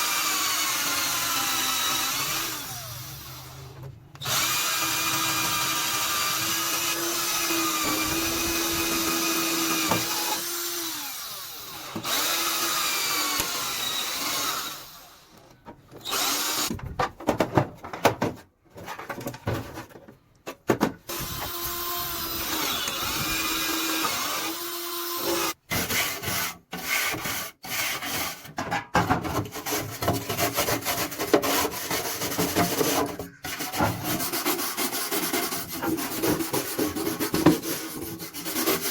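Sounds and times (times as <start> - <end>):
electric power drill running: 0.0 - 15.3, 16.0 - 16.7, 21.1 - 25.6
tool scraping and rubbing: 21.1 - 38.9.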